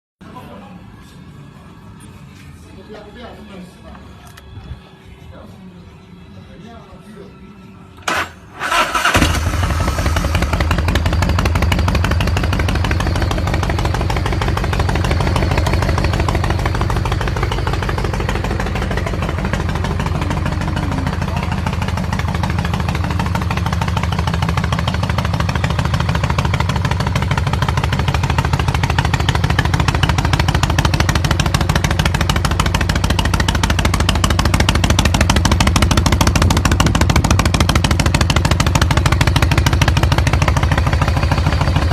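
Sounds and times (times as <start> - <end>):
motorcycle engine starting and idling: 7.9 - 41.9.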